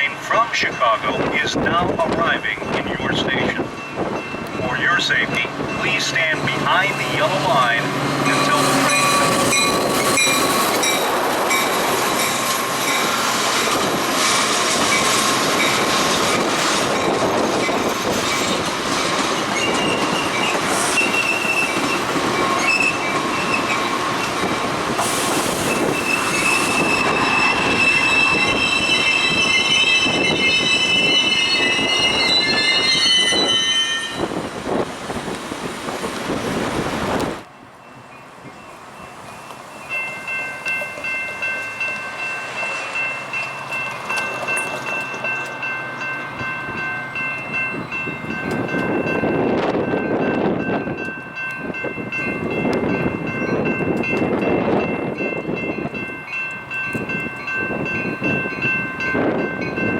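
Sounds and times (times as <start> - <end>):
train cars rumbling: 0.0 - 59.9
high-pitched wheel squeal: 19.6 - 23.9, 25.5 - 34.4.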